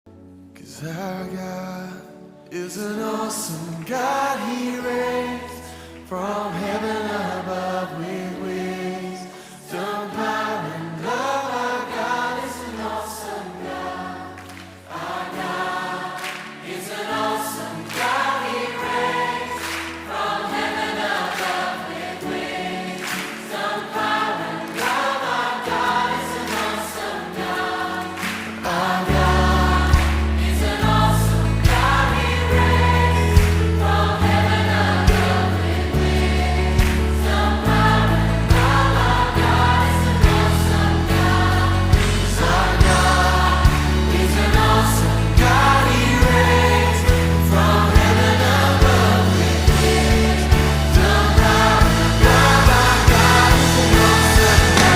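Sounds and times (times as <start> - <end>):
choir singing worship song: 0.6 - 54.9
heavy bass line: 49.7 - 54.9
instrumental backing with beat: 49.8 - 54.9.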